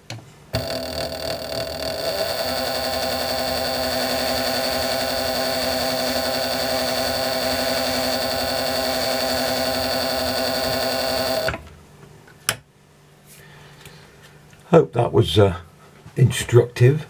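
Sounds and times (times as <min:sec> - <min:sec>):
lathe motor whining: 0:00.6 - 0:11.7.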